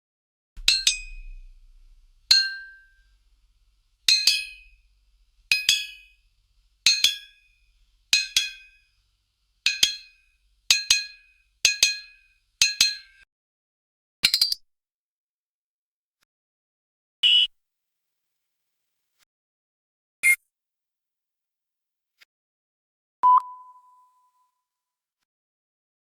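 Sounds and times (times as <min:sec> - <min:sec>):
metallic notification pings: 0:00.6 - 0:03.2.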